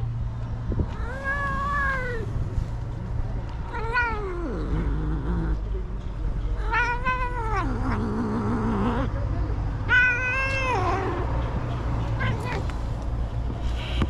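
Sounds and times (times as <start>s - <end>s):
cat meowing: 0.9s - 2.3s, 3.6s - 5.6s, 6.6s - 9.1s, 9.9s - 11.3s, 12.2s - 12.8s.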